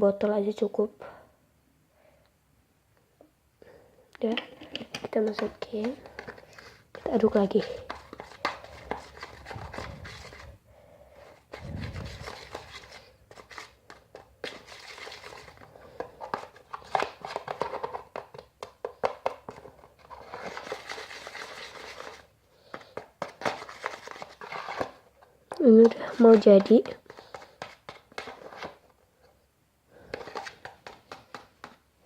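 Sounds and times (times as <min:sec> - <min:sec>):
slime being stirred: 0:04.5 - 0:10.6, 0:20.1 - 0:28.8.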